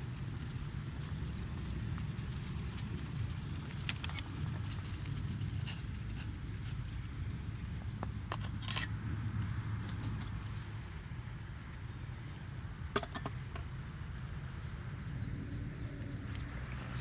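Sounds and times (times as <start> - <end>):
campfire wood crackling: 0.0 - 11.4
low steady rumble: 0.0 - 17.0.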